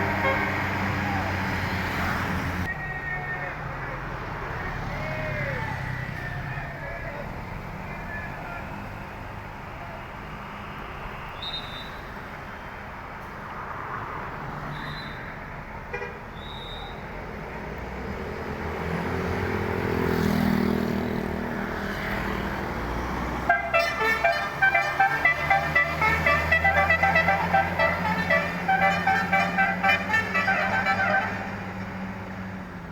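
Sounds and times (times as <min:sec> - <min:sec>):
bus multi-tone horn melody: 0:00.0 - 0:01.4, 0:23.4 - 0:32.1
street traffic: 0:00.0 - 0:32.9
vehicle passing: 0:17.9 - 0:32.9.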